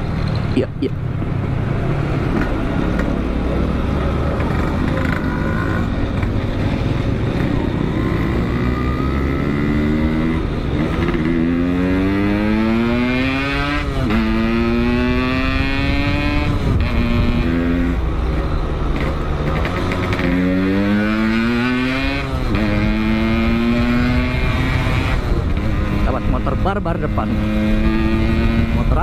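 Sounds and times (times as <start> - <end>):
two-stroke motorcycle accelerating: 0.0 - 29.0
wind noise: 5.8 - 26.4.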